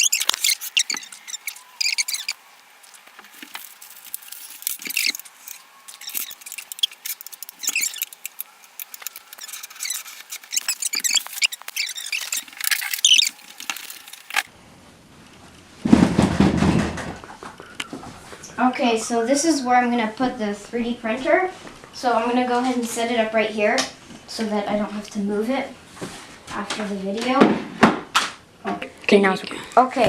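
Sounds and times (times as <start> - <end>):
packaging scratching and rustling: 0.0 - 14.5.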